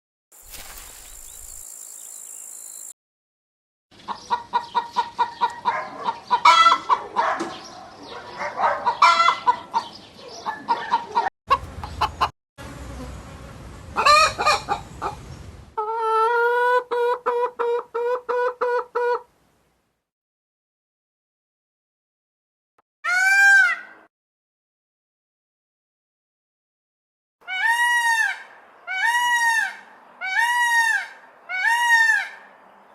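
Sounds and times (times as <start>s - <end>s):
fowl clucking and calling: 4.1s - 7.4s, 8.5s - 12.3s, 14.0s - 15.2s, 15.8s - 19.3s.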